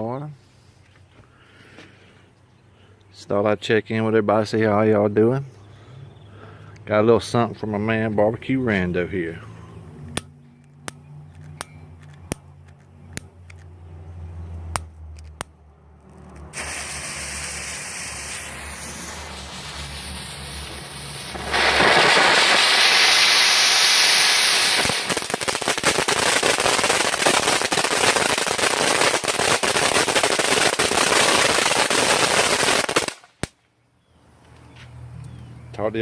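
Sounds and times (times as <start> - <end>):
firework crackling: 16.2 - 33.6
firework hissing: 16.4 - 33.5.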